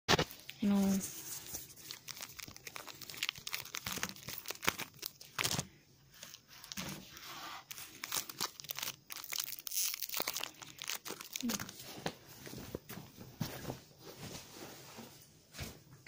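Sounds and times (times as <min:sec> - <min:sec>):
wrapper crinkling and tearing: 0:00.2 - 0:11.9.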